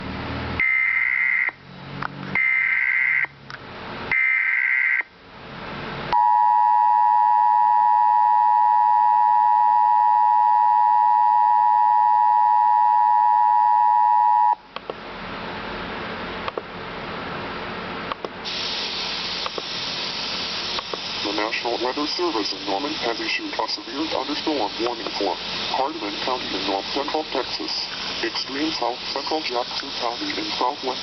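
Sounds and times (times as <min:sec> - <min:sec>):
two-tone attention signal: 0:06.2 - 0:14.6
background hiss: 0:18.4 - 0:31.0
buzzy digital header bursts: 0:19.7 - 0:31.0.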